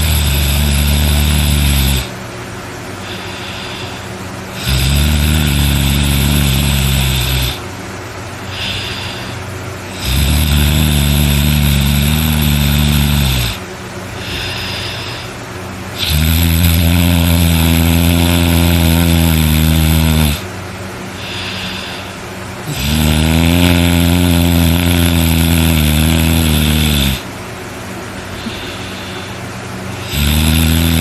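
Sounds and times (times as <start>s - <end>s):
man snoring loudly: 0.0s - 2.2s, 3.0s - 7.6s, 8.5s - 13.6s, 14.2s - 15.3s, 16.0s - 20.5s, 21.2s - 27.3s, 30.0s - 31.0s.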